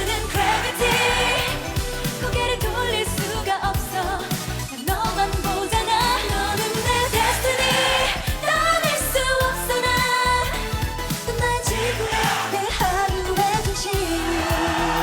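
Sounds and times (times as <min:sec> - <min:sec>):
pop dance song with female vocals: 0:00.0 - 0:15.0.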